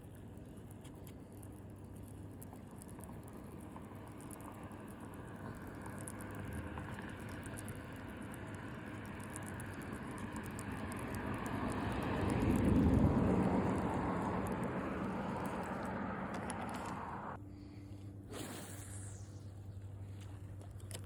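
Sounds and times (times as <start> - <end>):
steady low hum: 0.0 - 21.0
vehicle passing by: 8.6 - 17.4.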